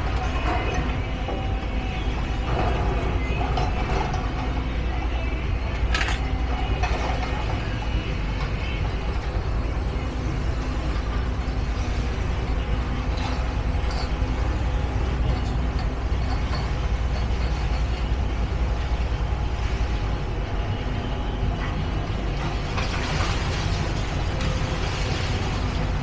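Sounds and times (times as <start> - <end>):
heavy diesel machinery running: 0.0 - 26.0
metallic clanking and knocks: 5.6 - 7.2, 23.8 - 25.4.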